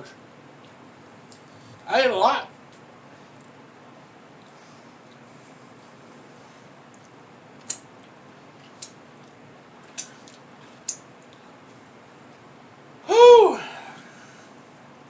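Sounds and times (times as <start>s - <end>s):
mouth clicks while chewing: 6.9s - 11.4s.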